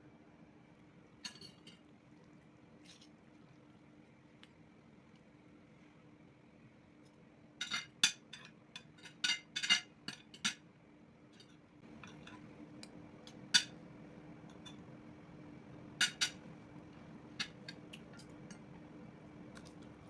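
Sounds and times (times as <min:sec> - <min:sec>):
utensils clinking against dishes: 0:01.2 - 0:01.8, 0:07.6 - 0:10.6, 0:11.3 - 0:12.5, 0:16.0 - 0:16.4.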